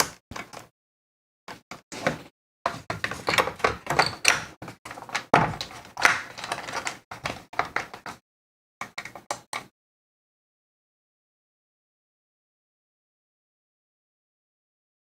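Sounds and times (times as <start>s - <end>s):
plastic parts knocking and clattering: 0.0s - 0.7s, 1.5s - 8.2s, 8.8s - 9.7s.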